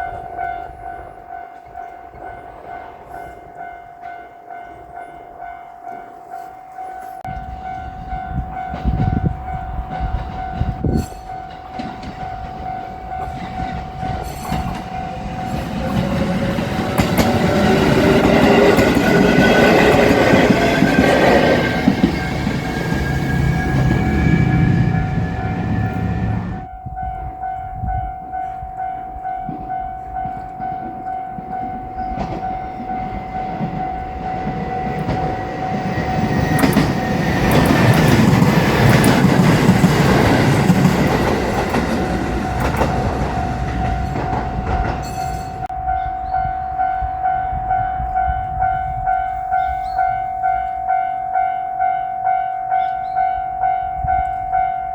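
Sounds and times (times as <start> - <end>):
electric train passing: 0.0 - 54.9
level crossing bell ringing: 11.1 - 54.9.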